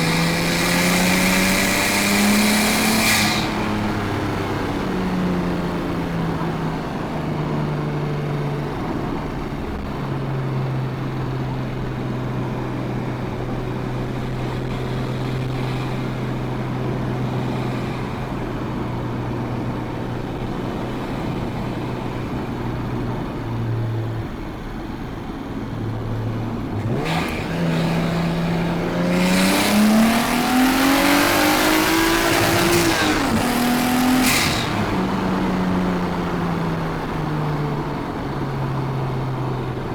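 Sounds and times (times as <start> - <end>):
car engine revving: 0.0 - 7.9, 11.4 - 39.2.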